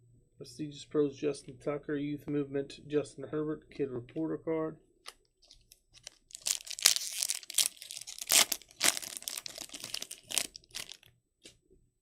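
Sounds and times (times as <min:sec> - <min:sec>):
plastic wrapper tearing and crinkling: 0:05.4 - 0:11.1.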